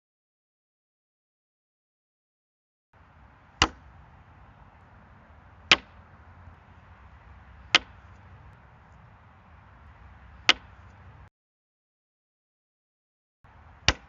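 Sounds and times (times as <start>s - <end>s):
sharp thwacks: 5.6s - 6.0s.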